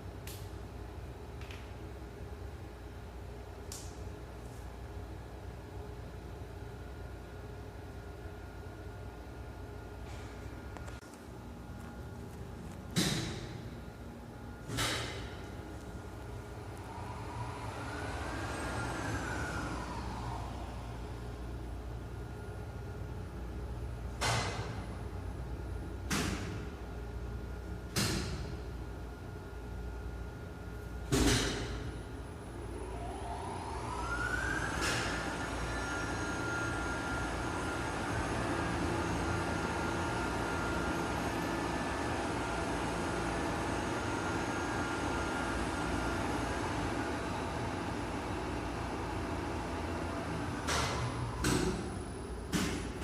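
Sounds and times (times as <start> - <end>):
lift machinery humming: 8.9 - 24.4, 32.2 - 53.0
faint high whine: 13.6 - 24.1, 31.7 - 49.4.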